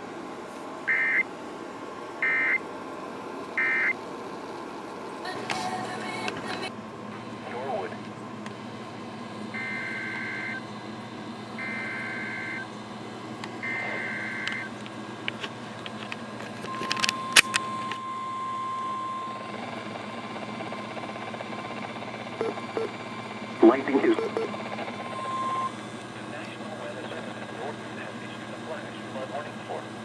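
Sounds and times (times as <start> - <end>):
radio hum and hiss: 0.0 - 30.0
weather radio alert tone: 0.9 - 1.3, 2.2 - 2.6, 3.6 - 4.0, 9.6 - 10.7, 11.6 - 12.7, 13.6 - 14.8, 16.6 - 19.9, 22.4 - 23.0, 23.6 - 30.0
buzzing two-tone data bursts: 11.6 - 12.7.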